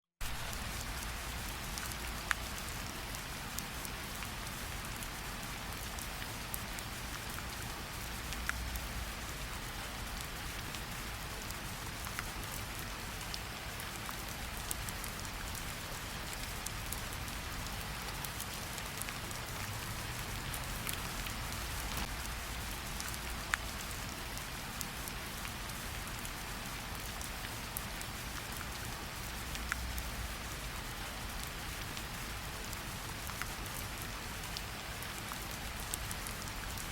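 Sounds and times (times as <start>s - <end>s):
steady rain hiss: 0.2s - 36.9s
raindrop ticks: 5.0s - 9.4s, 11.4s - 26.4s, 27.0s - 30.3s, 31.1s - 36.8s.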